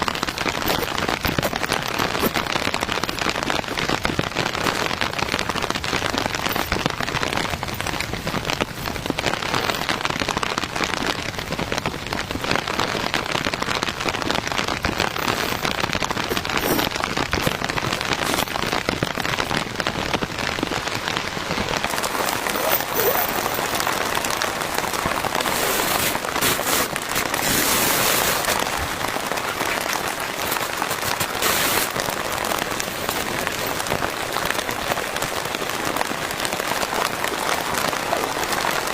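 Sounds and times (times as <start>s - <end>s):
heavy rain falling: 0.0s - 38.9s.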